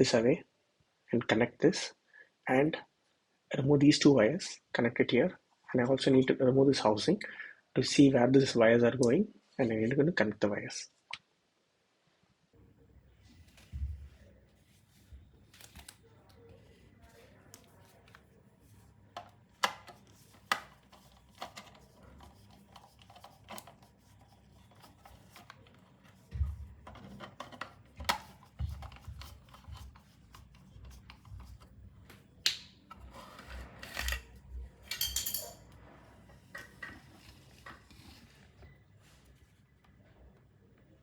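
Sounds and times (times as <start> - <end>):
tools rubbing and scraping: 14.5 - 31.8, 32.9 - 39.4
small tools clicking and tapping: 19.2 - 32.7, 34.9 - 35.6.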